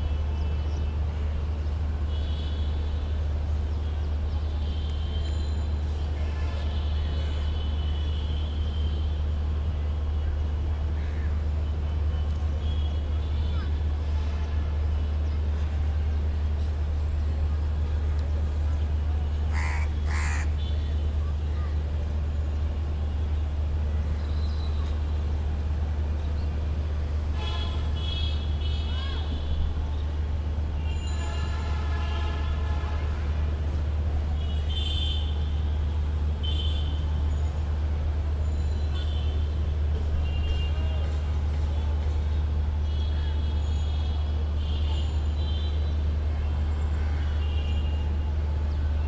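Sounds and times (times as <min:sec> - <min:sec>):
city traffic rumble: 0:00.0 - 0:49.0
traffic rumble: 0:08.5 - 0:30.8
crow cawing: 0:19.5 - 0:20.7.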